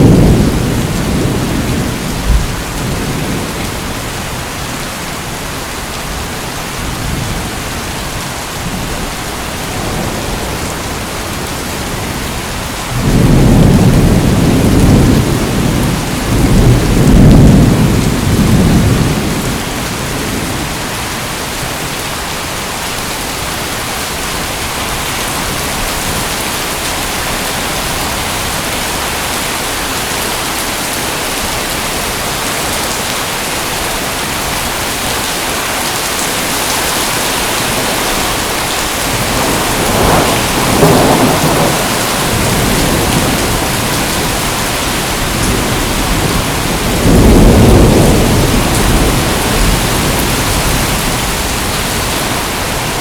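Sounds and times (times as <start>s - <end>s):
rolling thunder: 0.0s - 4.4s, 9.8s - 20.8s, 37.6s - 53.0s
heavy rain: 0.0s - 53.0s.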